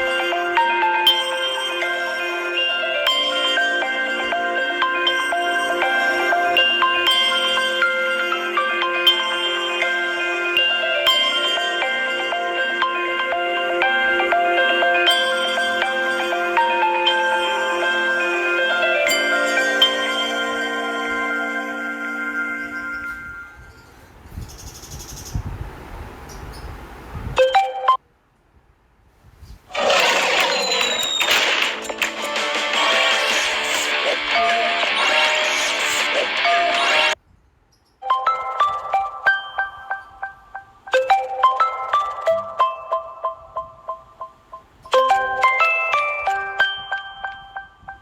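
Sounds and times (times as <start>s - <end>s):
phone ringtone melody: 0.0s - 23.6s, 27.4s - 28.0s, 29.8s - 37.2s, 38.1s - 48.0s
guitar music: 29.8s - 37.2s.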